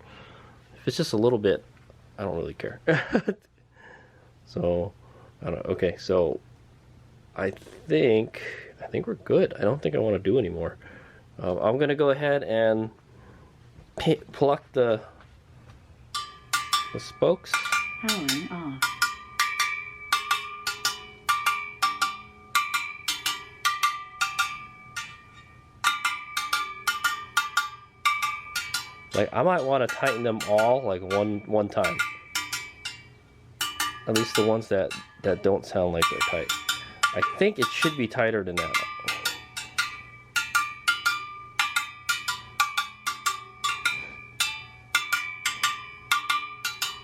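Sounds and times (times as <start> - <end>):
plucked wheel spokes pinging: 16.0 - 47.0.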